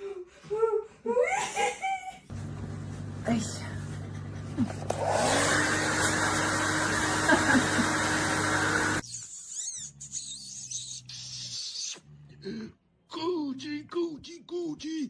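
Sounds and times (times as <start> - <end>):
loud humming motor: 2.3 - 9.0.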